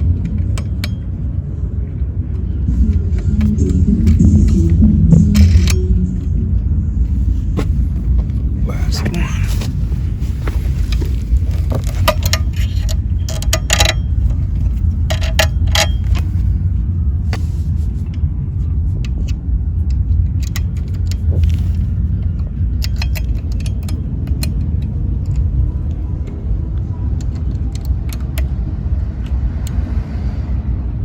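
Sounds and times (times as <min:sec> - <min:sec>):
steady low rumble: 0:00.0 - 0:31.0
metal hardware clinking and rattling: 0:10.3 - 0:16.5, 0:22.8 - 0:25.4.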